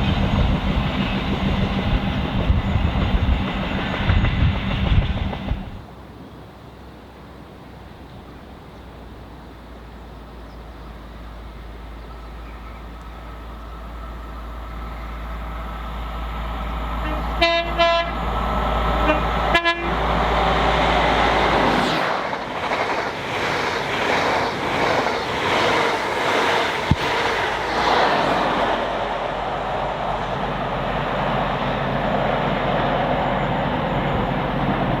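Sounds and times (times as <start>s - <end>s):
train horn blasts: 17.0s - 18.2s, 19.0s - 20.1s
train wheels clattering: 22.0s - 28.5s.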